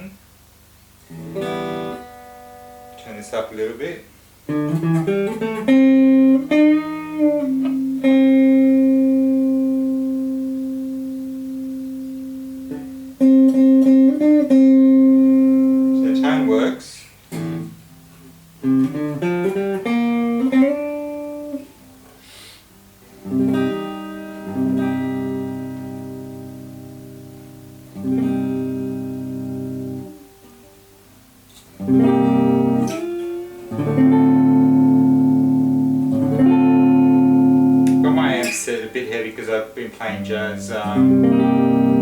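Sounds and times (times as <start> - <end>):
electric guitar notes and chords: 1.1 - 3.4, 4.5 - 42.0.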